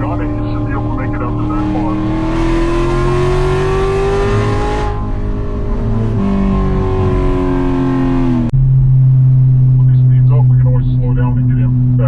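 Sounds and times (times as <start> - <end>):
sports car engine under load: 0.0 - 12.0
steady low drone: 0.0 - 12.0.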